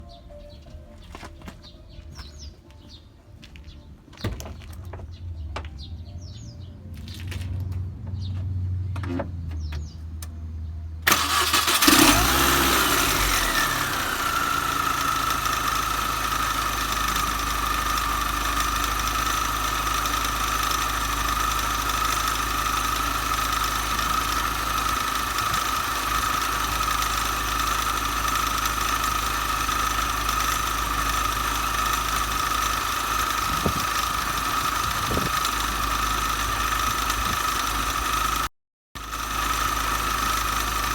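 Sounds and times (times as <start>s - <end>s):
car engine starting and idling: 4.3s - 40.9s
high engine whine: 11.0s - 40.9s.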